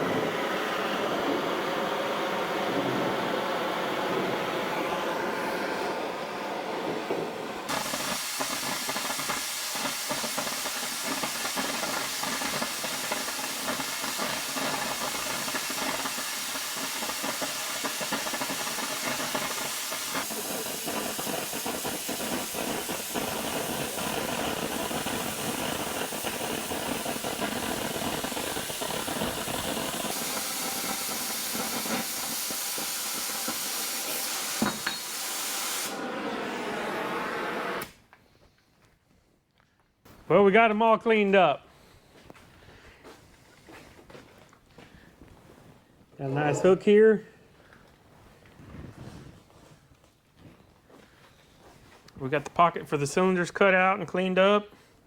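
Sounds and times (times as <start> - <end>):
metal-cutting tool hissing: 0.3 - 37.9.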